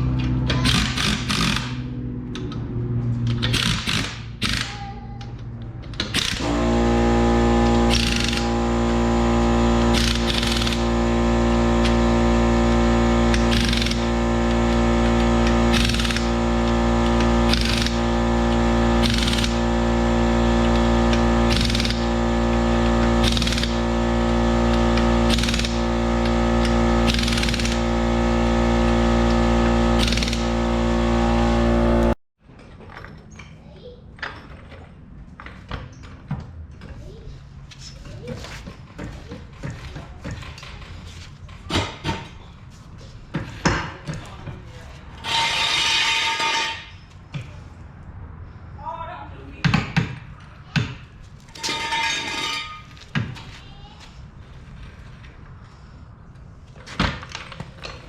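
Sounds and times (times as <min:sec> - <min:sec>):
held synth chord: 0:06.5 - 0:32.2.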